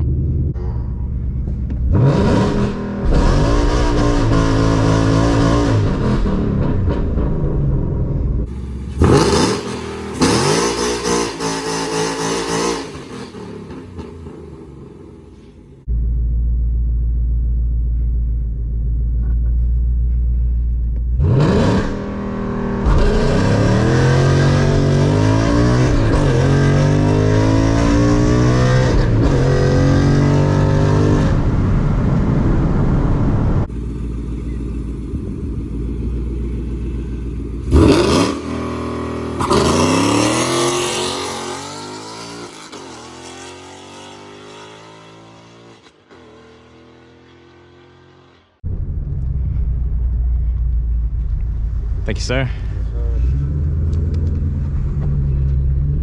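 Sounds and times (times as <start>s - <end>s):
car engine idling and revving: 0.0s - 56.0s
car accelerating through gears: 1.9s - 7.3s, 21.2s - 31.8s, 37.6s - 48.3s.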